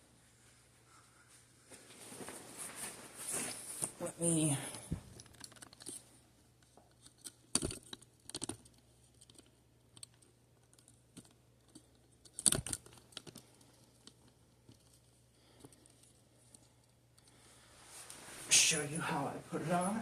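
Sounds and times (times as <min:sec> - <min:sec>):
fabric rustling: 0:00.0 - 0:05.2, 0:17.6 - 0:20.0.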